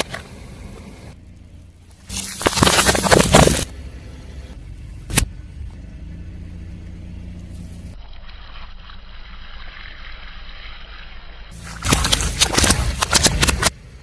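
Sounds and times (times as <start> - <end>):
car engine running low revs: 0.0 - 2.1, 3.0 - 8.0.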